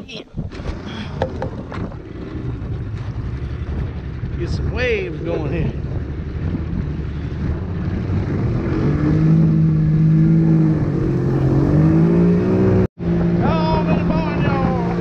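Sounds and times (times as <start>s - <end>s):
outboard motor running: 0.4s - 8.0s.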